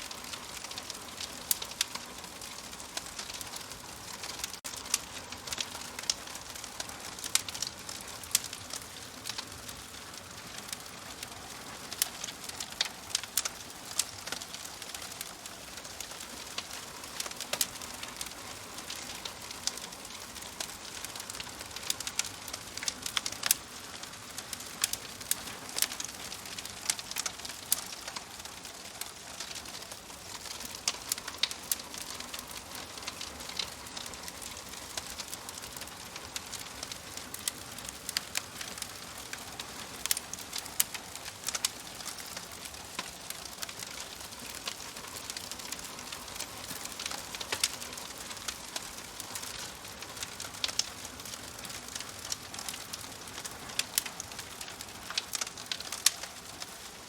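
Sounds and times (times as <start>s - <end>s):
wood fire crackling: 0.0s - 57.0s
sharp pops and snaps: 40.0s - 56.8s.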